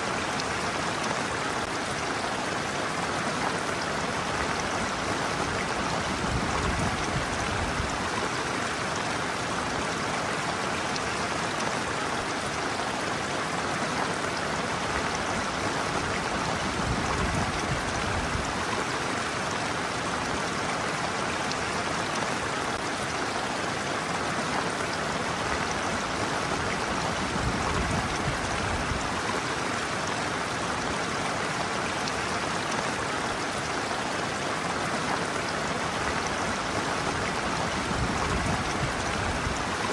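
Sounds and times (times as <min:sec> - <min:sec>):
stream water splashing: 0:00.0 - 0:39.9.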